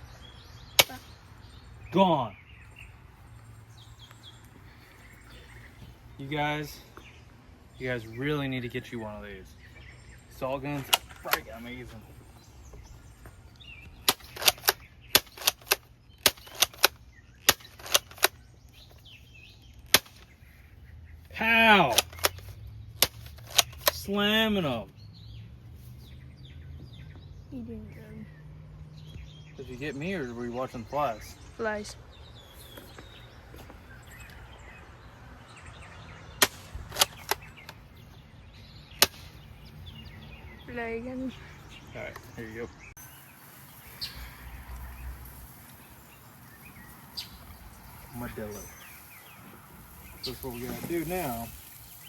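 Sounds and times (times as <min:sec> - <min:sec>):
faint birdsong: 0:00.0 - 0:52.0
salt guns firing sharp cracks: 0:00.8 - 0:01.2, 0:14.0 - 0:18.4, 0:36.4 - 0:37.8, 0:38.9 - 0:39.5.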